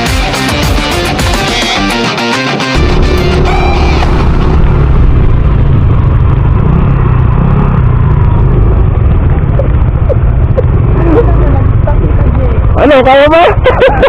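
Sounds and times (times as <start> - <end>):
wind and road noise: 2.8 - 13.8
scooter engine running: 2.8 - 14.0.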